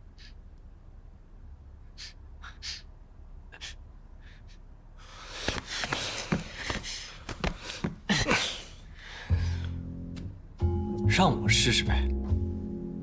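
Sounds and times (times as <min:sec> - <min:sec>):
rustling and thuds: 0:05.4 - 0:08.1.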